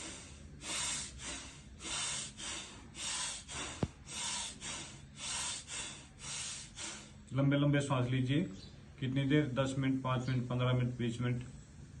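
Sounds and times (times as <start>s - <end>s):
man breathing deeply: 0.0s - 7.3s.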